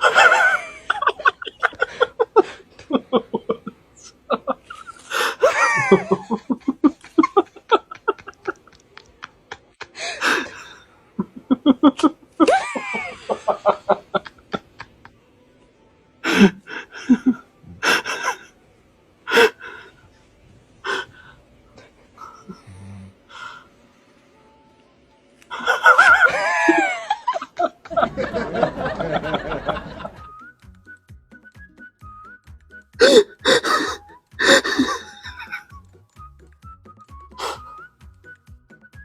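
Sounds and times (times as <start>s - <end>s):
hard laughter: 0.0s - 15.1s, 25.5s - 30.2s, 33.0s - 35.7s.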